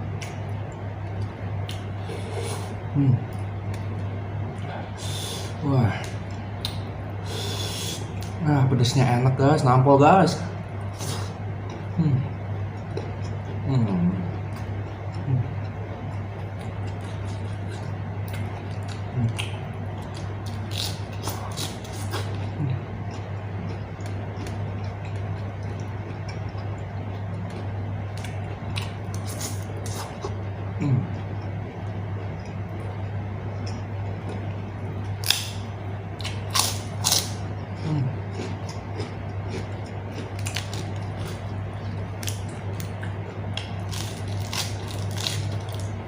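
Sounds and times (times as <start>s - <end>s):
steady low hum: 0.0s - 46.0s
quiet chewing: 10.8s - 35.4s, 36.2s - 46.0s.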